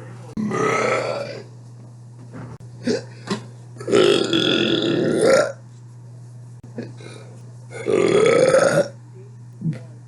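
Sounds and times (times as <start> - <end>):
person burping: 0.4 - 1.5, 2.8 - 3.1, 3.8 - 5.6, 7.8 - 9.0.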